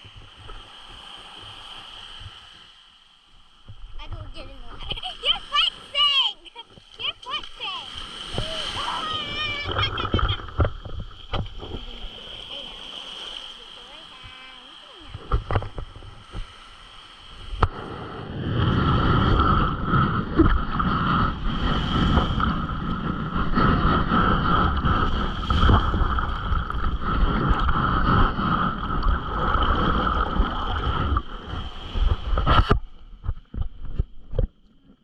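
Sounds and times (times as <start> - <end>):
water rushing and churning: 0.0 - 35.0.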